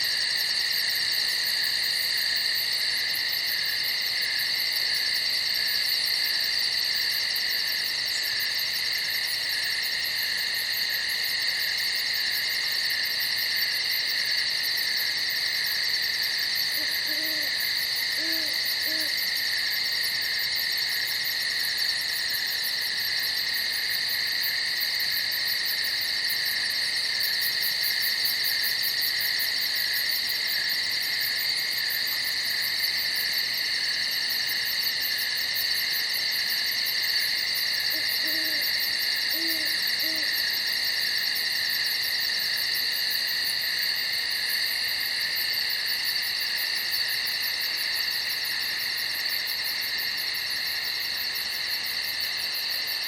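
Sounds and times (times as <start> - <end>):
crickets trilling: 0.0 - 53.0
faint low hoots: 16.8 - 17.6, 37.9 - 38.7, 39.3 - 40.3.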